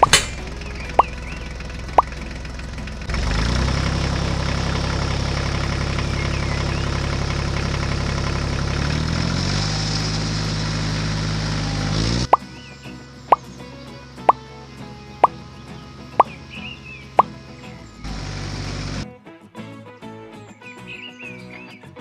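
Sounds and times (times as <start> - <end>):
short pop: 0.0 - 0.5
vehicle engine running: 0.0 - 19.1.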